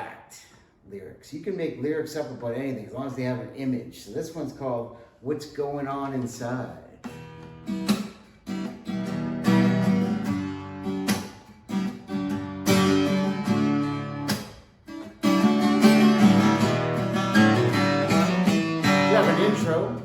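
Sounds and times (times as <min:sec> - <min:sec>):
acoustic guitar strumming: 0:07.0 - 0:20.0.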